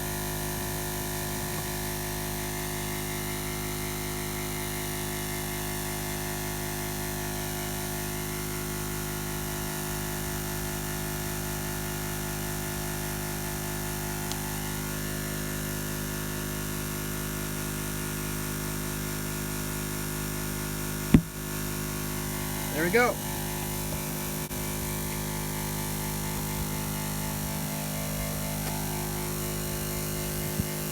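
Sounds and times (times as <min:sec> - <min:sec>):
air compressor running: 0:00.0 - 0:30.9
tire bead popping bang: 0:21.2 - 0:21.6.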